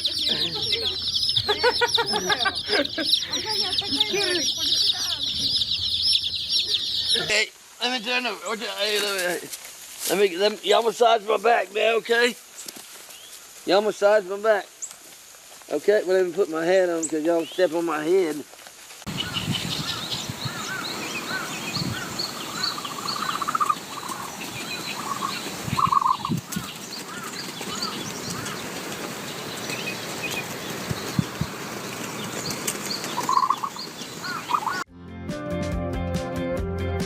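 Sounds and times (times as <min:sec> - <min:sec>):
young poultry peeping and chirping: 0:00.0 - 0:07.4, 0:19.1 - 0:34.9.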